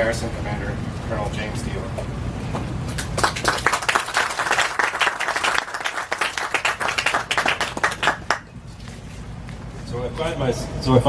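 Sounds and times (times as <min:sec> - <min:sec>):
crowd applauding: 0:03.0 - 0:08.5.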